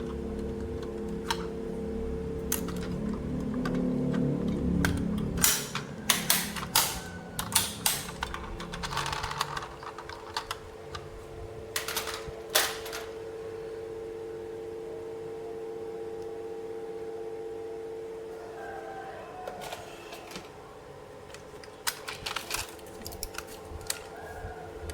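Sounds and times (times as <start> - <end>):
faint steady hum: 0.0 - 24.9
plastic toy parts clicking: 4.8 - 11.0, 21.3 - 24.1.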